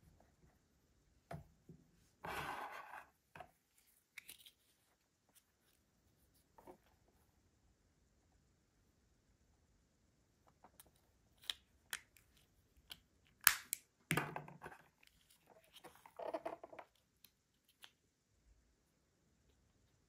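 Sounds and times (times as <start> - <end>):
plastic snap: 13.4 - 14.3.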